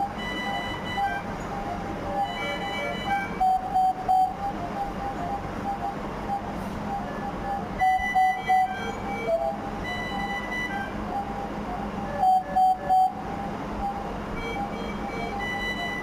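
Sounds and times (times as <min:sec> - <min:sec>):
medical alarm beeping: 0:00.0 - 0:16.0.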